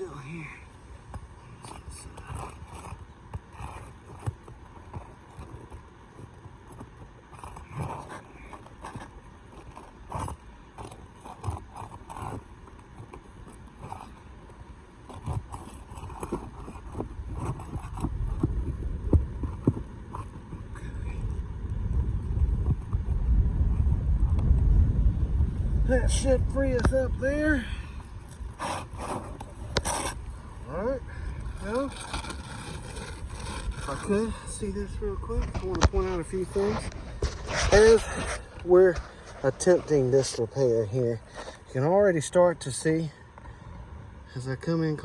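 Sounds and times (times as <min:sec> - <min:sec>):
roofing tool scraping shingles: 0:01.6 - 0:20.8, 0:27.9 - 0:41.8
low rumble: 0:20.7 - 0:28.6.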